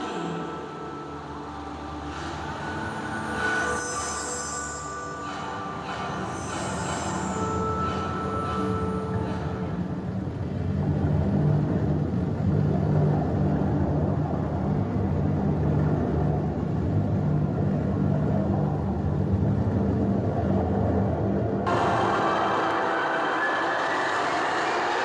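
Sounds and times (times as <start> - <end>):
low rumble with droning hum: 7.2 - 22.8.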